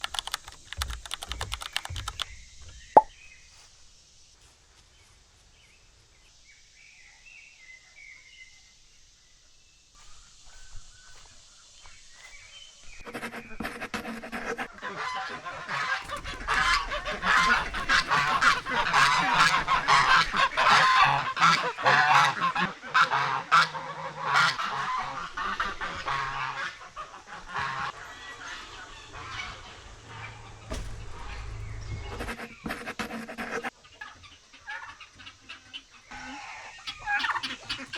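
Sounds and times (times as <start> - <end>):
faint bird chirps: 0.2 - 23.4
waterfowl flock calling: 10.0 - 37.9
sharp knock: 30.7 - 32.2.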